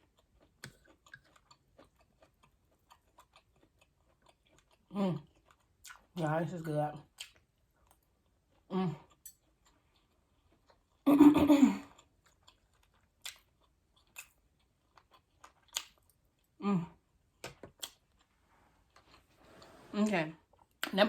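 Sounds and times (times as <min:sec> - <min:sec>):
person chewing and crunching food: 0:00.0 - 0:11.1, 0:11.7 - 0:19.8.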